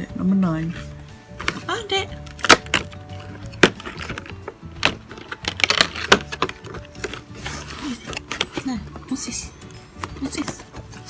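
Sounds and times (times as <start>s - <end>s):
cardboard tearing with sharp clicks: 2.3s - 8.6s.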